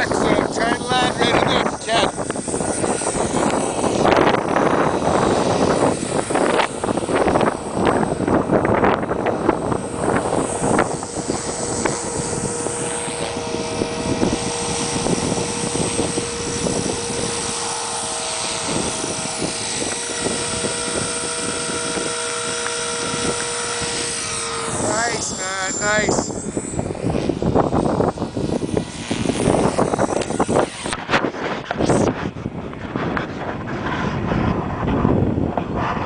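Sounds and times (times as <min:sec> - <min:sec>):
rc helicopter motor whine: 0:00.0 - 0:36.0
wind buffeting microphone: 0:00.0 - 0:36.0.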